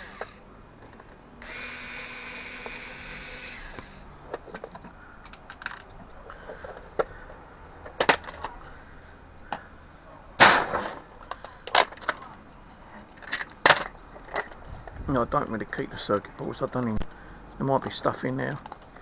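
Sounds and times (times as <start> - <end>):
plastic and metal parts clicking: 0.0 - 8.7, 10.4 - 12.5, 13.1 - 15.0, 18.1 - 19.0.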